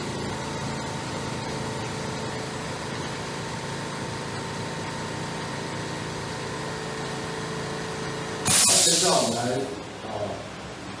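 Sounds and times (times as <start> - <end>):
steady machine hum: 8.5 - 9.9.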